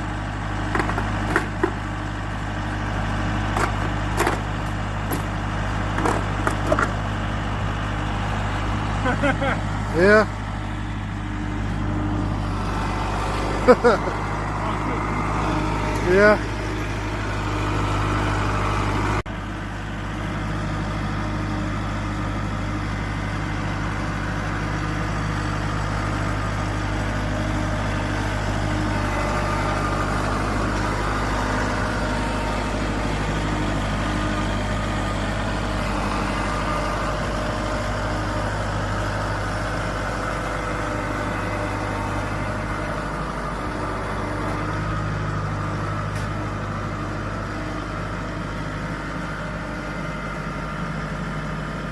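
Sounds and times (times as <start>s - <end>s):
diesel engine droning: 0.0s - 51.9s.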